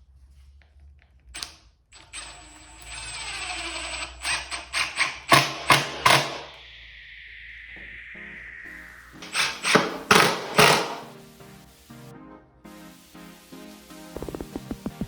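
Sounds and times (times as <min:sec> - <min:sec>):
held falling tone: 0:06.0 - 0:12.0.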